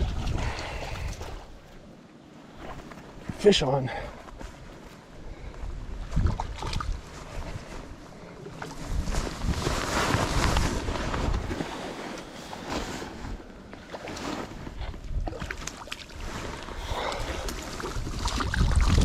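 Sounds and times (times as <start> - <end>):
wind on microphone: 0.0 - 1.6, 5.3 - 8.0, 8.6 - 11.7, 16.7 - 19.0
water splashes: 6.1 - 7.1, 15.2 - 19.0.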